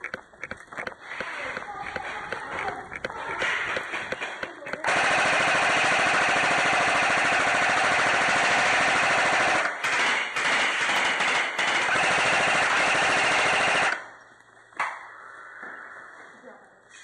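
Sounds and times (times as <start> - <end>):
electric airsoft gun firing bursts: 3.7 - 14.0.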